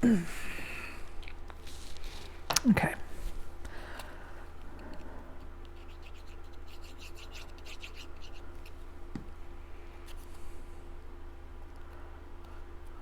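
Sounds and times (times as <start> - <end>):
pen scratching on cardstock: 5.7 - 8.4.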